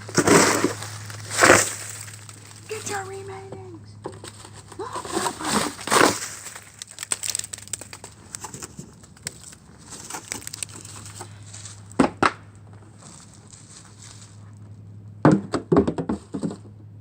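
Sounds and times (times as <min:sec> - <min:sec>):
milk carton crinkling: 0:00.0 - 0:03.3, 0:04.1 - 0:12.0.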